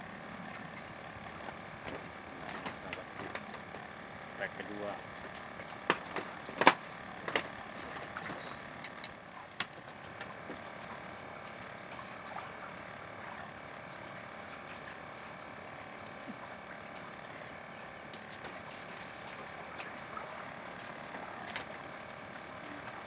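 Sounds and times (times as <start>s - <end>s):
sharp clicks and knocks: 5.2s - 10.6s.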